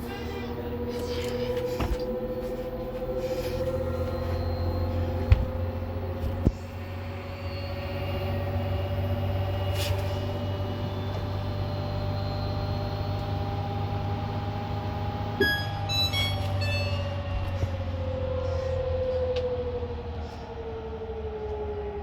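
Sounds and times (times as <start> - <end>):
short electronic beeps: 15.4 - 17.3.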